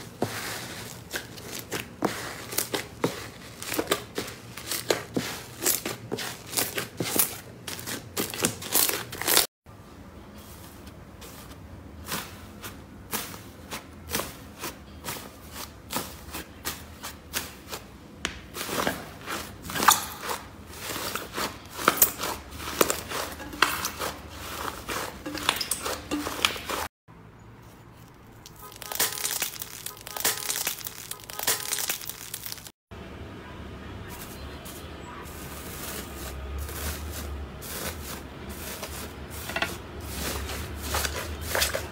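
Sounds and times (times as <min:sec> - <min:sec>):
slime popping and crackling: 0:28.4 - 0:32.7.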